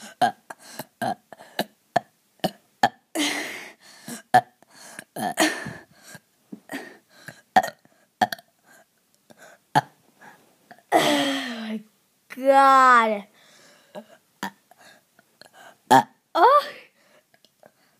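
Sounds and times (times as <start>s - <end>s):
person burping: 0.2s - 3.0s, 5.2s - 5.7s, 7.6s - 8.5s, 14.4s - 14.6s, 15.9s - 16.6s.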